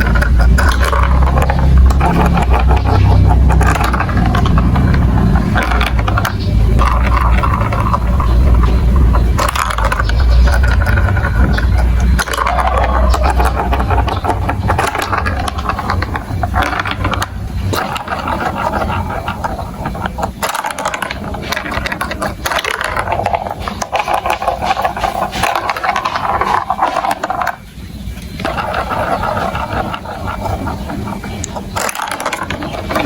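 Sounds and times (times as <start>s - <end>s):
low rumble: 0.0s - 20.5s
marbles clattering through marble run: 0.0s - 33.0s.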